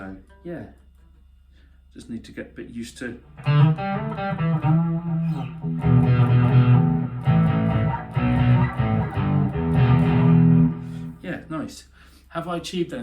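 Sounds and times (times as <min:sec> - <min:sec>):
electric guitar chords: 0:03.4 - 0:11.2.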